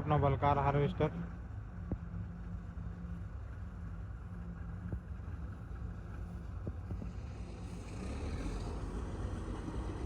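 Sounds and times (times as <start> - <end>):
diesel engine droning: 7.2 - 10.0.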